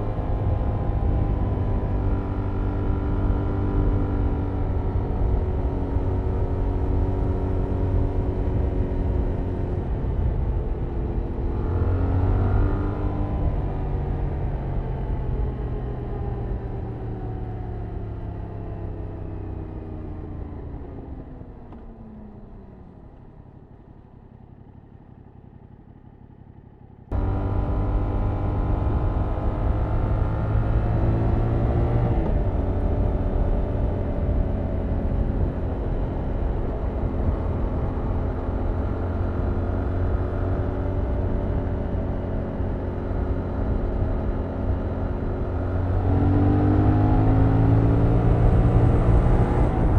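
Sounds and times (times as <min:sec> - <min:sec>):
motorcycle engine revving: 0:11.4 - 0:14.4, 0:27.1 - 0:49.9.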